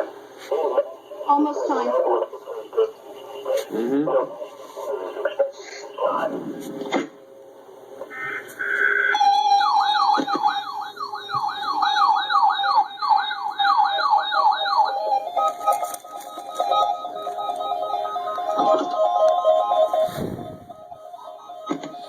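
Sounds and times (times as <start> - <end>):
pulsing warbling beeps: 8.1 - 15.2
sweeping siren-like alert tone: 8.1 - 22.0.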